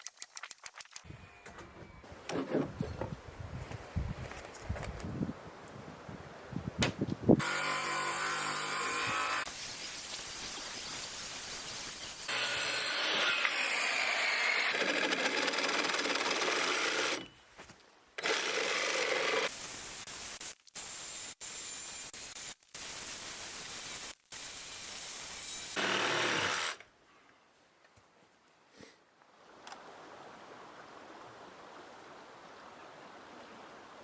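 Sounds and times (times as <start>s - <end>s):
carpentry work noise: 0.0s - 3.2s, 7.4s - 17.4s, 23.6s - 26.9s
power tool running: 7.4s - 9.5s, 11.9s - 17.3s, 18.2s - 19.5s, 25.4s - 26.8s.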